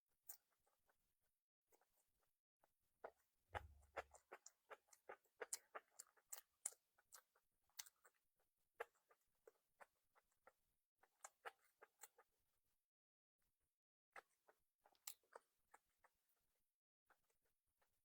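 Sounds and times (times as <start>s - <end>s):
person chewing food: 3.0s - 12.3s, 14.2s - 16.2s.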